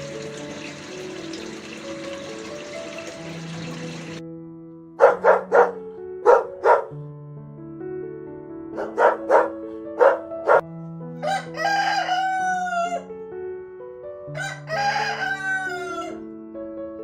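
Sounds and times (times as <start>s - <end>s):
rooster crowing: 11.2s - 13.1s, 14.3s - 16.2s.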